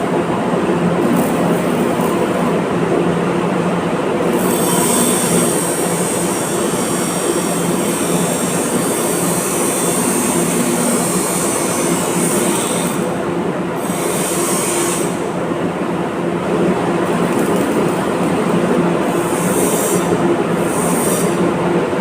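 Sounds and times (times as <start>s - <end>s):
steady hum: 0.0s - 22.0s
welding arc crackling and hissing: 1.0s - 2.5s, 4.3s - 13.1s, 17.0s - 21.4s.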